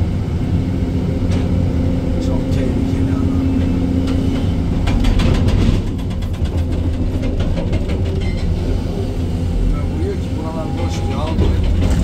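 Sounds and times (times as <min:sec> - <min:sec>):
excavator diesel engine running: 0:00.0 - 0:12.0
metallic clattering and knocking: 0:03.6 - 0:09.0, 0:10.6 - 0:12.0.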